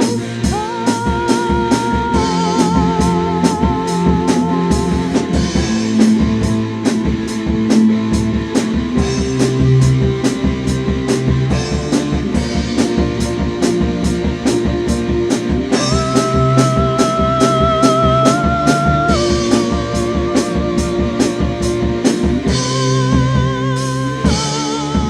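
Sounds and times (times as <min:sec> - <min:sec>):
instrumental soundtrack music: 0:00.0 - 0:25.0.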